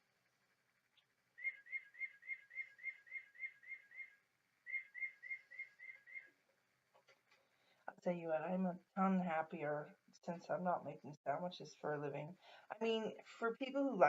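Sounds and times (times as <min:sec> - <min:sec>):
recorded bird song from speaker: 0:00.9 - 0:06.4.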